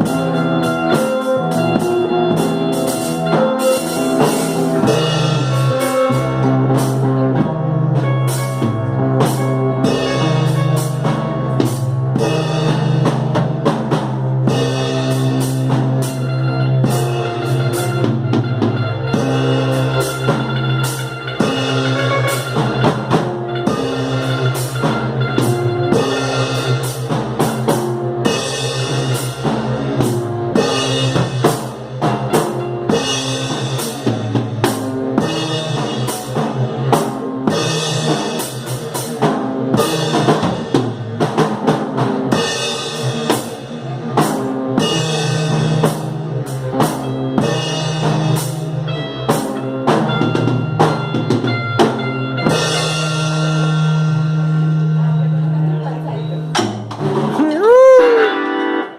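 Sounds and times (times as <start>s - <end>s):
sustained guitar notes: 0.0s - 13.6s, 14.4s - 28.2s, 57.3s - 58.9s
drum kit beat: 0.0s - 54.7s, 56.5s - 58.6s.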